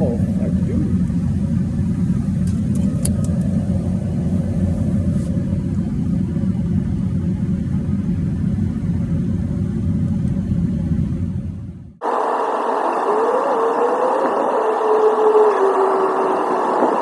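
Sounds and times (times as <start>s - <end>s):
low rumble: 0.0s - 12.1s
faint hum: 0.0s - 17.0s.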